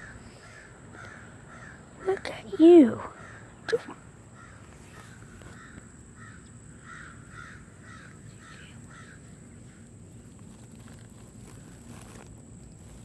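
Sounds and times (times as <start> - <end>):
distant crow cawing: 0.0 - 2.3, 3.0 - 9.9.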